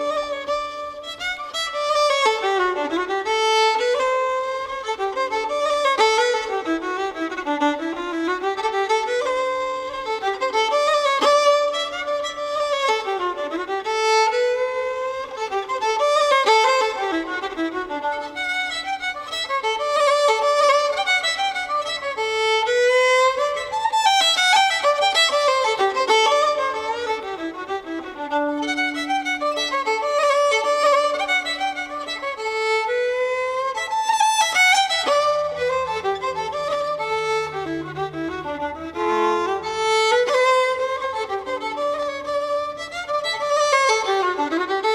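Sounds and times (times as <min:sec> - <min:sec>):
fiddle tune: 0:00.0 - 0:44.9
lower accompaniment: 0:24.8 - 0:44.8.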